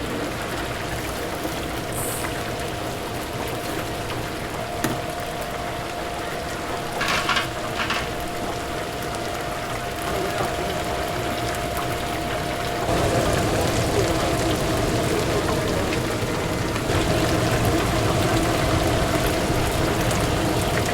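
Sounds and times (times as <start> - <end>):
chicken deep-frying in oil: 0.0 - 20.9
short clatters: 7.0 - 8.2.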